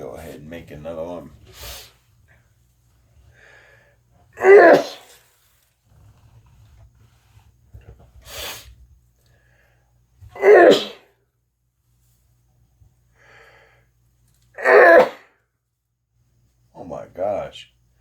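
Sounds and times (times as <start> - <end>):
person sneezing: 4.4 - 5.2, 10.3 - 11.1, 14.6 - 15.3.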